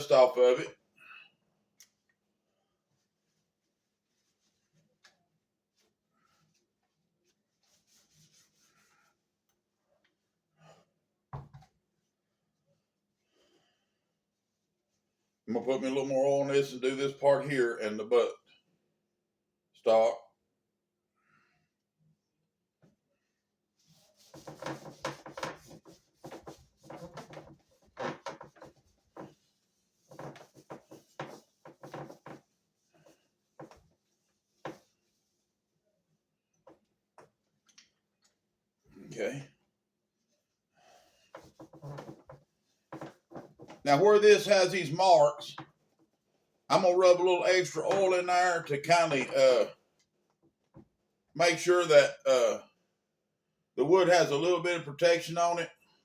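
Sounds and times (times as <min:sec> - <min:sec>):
paper towel rubbing: 0:02.8 - 0:09.4, 0:23.7 - 0:37.5, 0:40.2 - 0:49.7.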